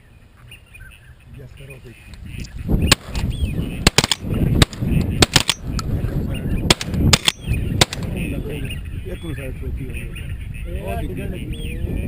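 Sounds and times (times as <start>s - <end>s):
shotgun shots: 2.9s - 5.7s, 6.7s - 8.2s.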